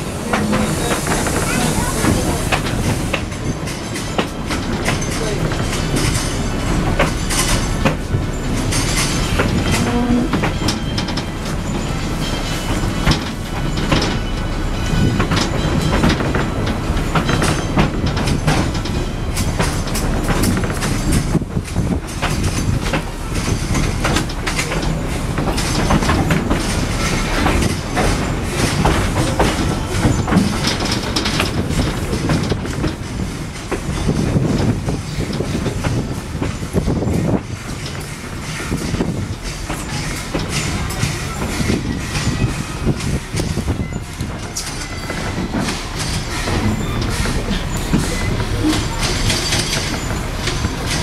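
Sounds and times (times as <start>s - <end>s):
train wheels clicking over rail joints: 0.0s - 51.0s
train wheels squealing: 7.3s - 18.0s, 38.0s - 51.0s.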